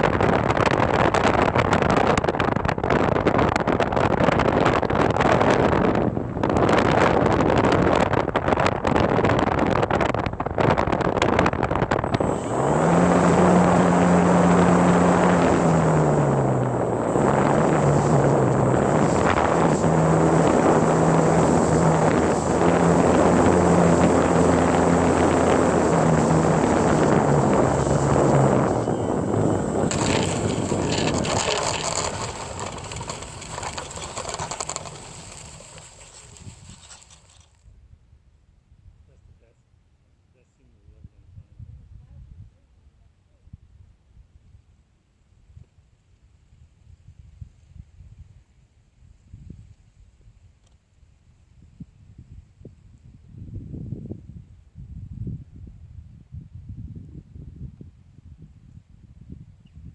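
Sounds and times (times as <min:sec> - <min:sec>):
wind rushing over microphone: 0:00.0 - 0:37.3
model plane motor humming: 0:12.0 - 0:37.6.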